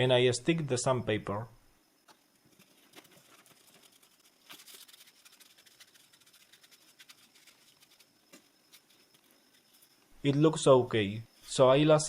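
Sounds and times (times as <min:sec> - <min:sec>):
faint scattered ticks: 0:00.6 - 0:12.0
soft rustle: 0:02.0 - 0:10.2.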